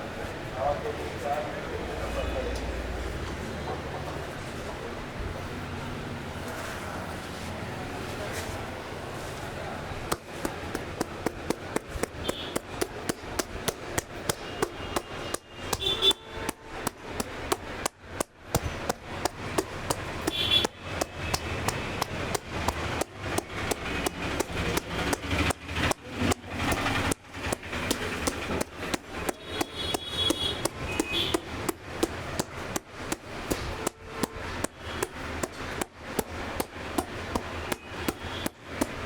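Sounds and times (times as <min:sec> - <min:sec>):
hands slapping head massage: 0:10.0 - 0:39.0.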